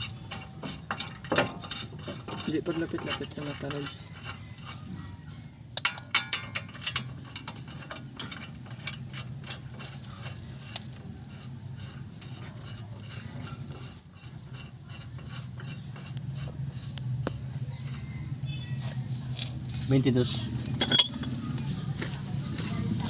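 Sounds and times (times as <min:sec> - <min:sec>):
metal tools clicking and clinking: 0:00.0 - 0:04.9, 0:05.8 - 0:18.1, 0:20.6 - 0:21.7
low steady hum: 0:05.7 - 0:23.0.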